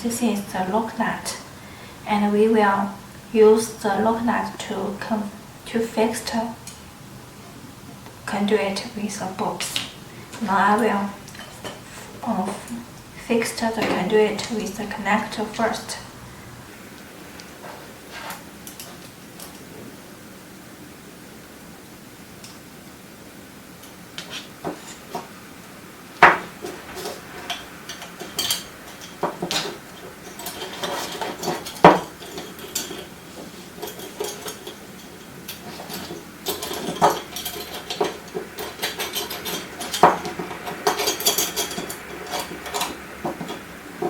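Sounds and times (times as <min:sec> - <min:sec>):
sharp knocks: 0:26.2 - 0:26.5
metallic clicks and clinks: 0:33.8 - 0:43.7.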